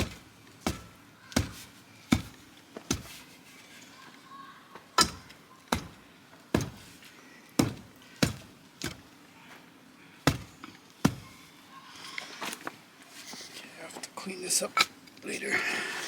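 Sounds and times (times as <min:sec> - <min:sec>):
sharp knocks: 0:00.0 - 0:03.2, 0:05.0 - 0:06.0, 0:06.6 - 0:07.0, 0:07.6 - 0:09.0, 0:10.3 - 0:11.4.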